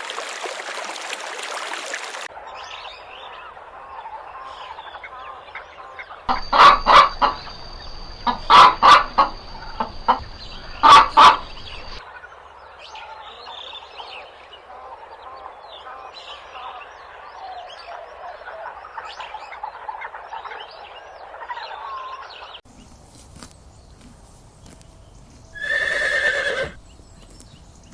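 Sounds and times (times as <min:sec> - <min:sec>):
chicken calling: 0:04.7 - 0:07.5, 0:08.2 - 0:12.0
chorus of small animal calls: 0:08.2 - 0:22.6.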